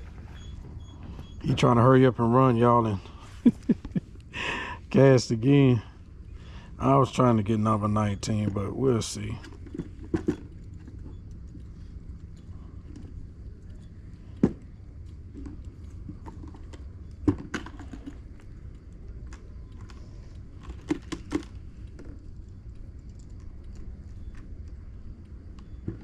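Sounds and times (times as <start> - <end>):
steady low rumble: 0.0 - 17.4.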